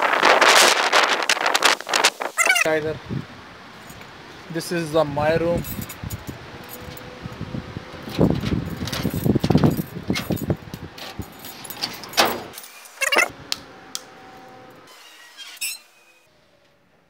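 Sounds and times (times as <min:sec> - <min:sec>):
keys jangling at a lock: 0:05.5 - 0:13.3.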